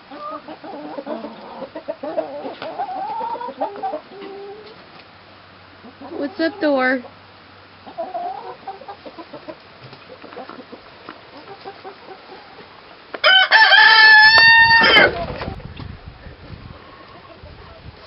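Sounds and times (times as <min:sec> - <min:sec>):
chicken clucking: 0:00.0 - 0:04.8, 0:05.8 - 0:07.2, 0:07.8 - 0:12.8, 0:16.6 - 0:18.0
rooster crowing: 0:13.2 - 0:15.2.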